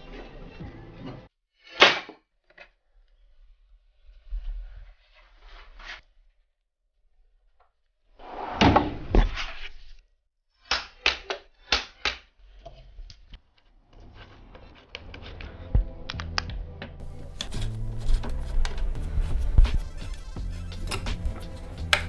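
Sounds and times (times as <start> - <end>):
background music: 15.4 - 22.0
bicycle parts clunking: 17.0 - 22.0.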